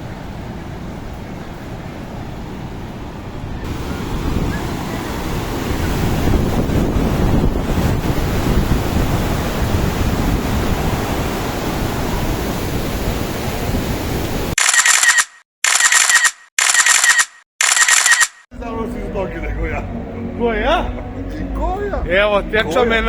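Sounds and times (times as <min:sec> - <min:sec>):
steady rushing noise: 0:03.1 - 0:14.6
short bright bursts: 0:14.6 - 0:18.5.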